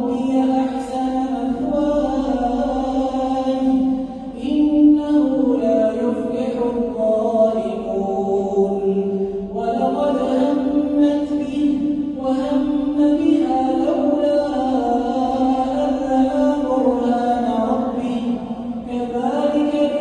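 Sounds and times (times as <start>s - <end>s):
man chanting melodic recitation: 0.0s - 20.0s.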